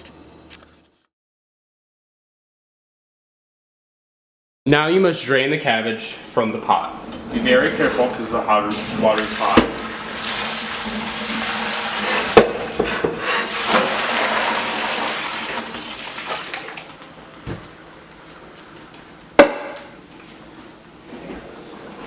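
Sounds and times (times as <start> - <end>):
water pouring from a pot: 8.7 - 17.1
pot knocking: 11.3 - 13.9.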